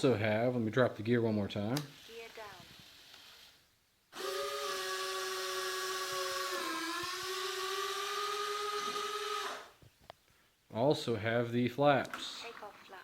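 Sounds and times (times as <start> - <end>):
small motor whine: 4.1 - 9.8.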